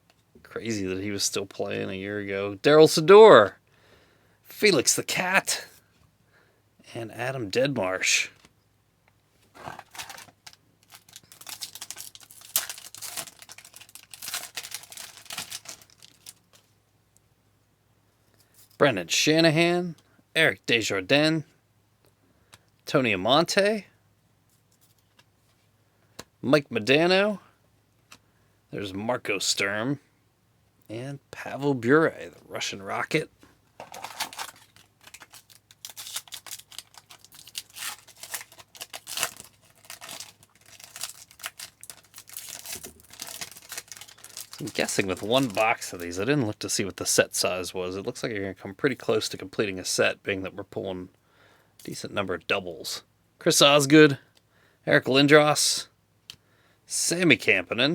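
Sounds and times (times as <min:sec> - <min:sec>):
wrapper crinkling and tearing: 0:09.6 - 0:16.7, 0:33.8 - 0:46.3.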